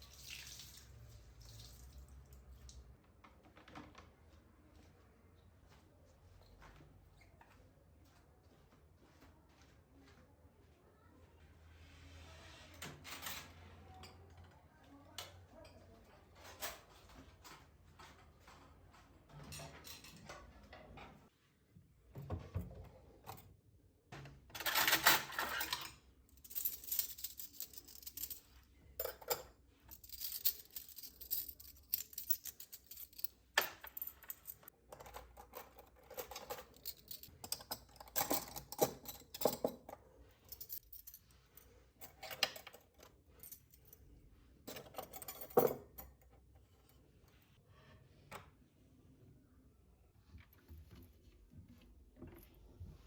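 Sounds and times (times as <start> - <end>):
tableware clinking and clattering: 24.5 - 26.0, 26.7 - 40.8, 42.1 - 43.0, 44.7 - 46.2.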